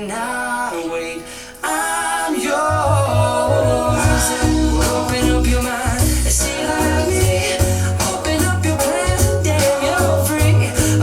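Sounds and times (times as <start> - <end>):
pop song over speakers: 0.0 - 11.0
deep bass line: 2.7 - 11.0.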